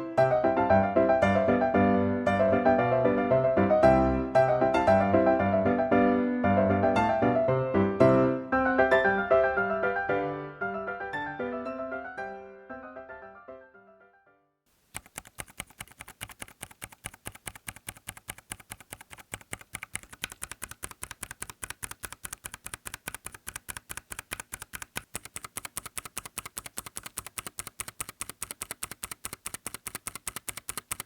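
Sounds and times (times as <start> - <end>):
keyboard typing clacks: 14.8 - 31.0.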